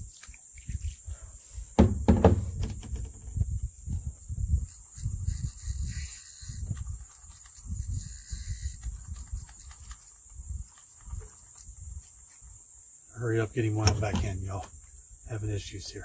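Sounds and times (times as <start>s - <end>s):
steady high hiss: 1.3s - 16.0s
wind buffeting microphone: 1.8s - 7.0s, 7.6s - 9.5s.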